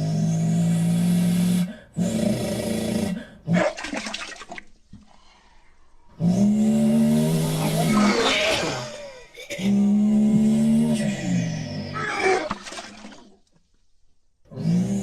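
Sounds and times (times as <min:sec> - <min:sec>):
man imitating engine with mouth: 0:00.0 - 0:03.8, 0:06.2 - 0:13.1
hissing sputtering vocal burst: 0:06.7 - 0:13.3.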